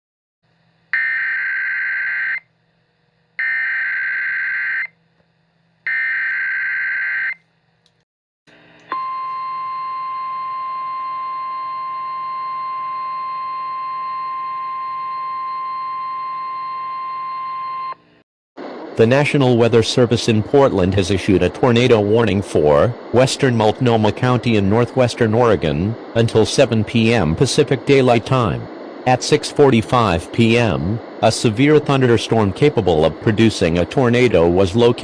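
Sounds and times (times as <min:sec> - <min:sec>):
faint low hum: 0:08.6 - 0:35.0.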